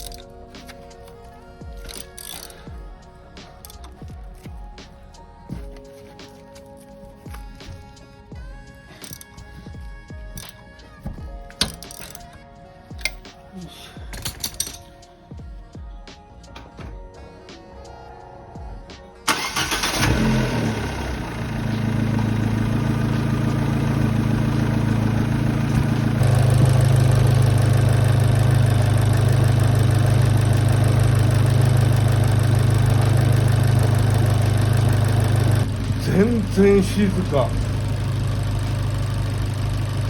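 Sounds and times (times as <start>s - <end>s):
car engine starting and idling: 19.2s - 40.0s.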